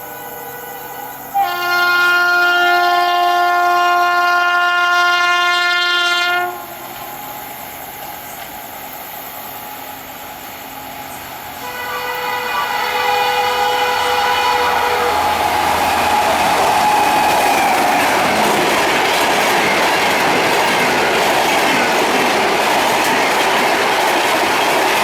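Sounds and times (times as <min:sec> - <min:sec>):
locomotive horn blast: 0:00.0 - 0:06.8, 0:11.6 - 0:19.8.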